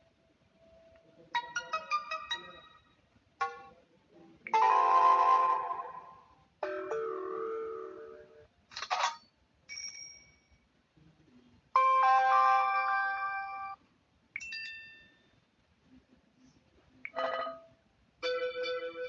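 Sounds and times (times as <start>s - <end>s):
short ding: 9.7s - 10.6s.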